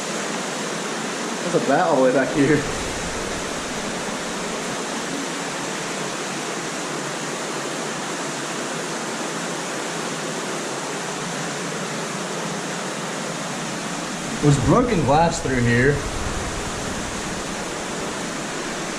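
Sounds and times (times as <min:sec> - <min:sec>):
waterfall rushing: 0:01.7 - 0:07.3, 0:12.2 - 0:18.9.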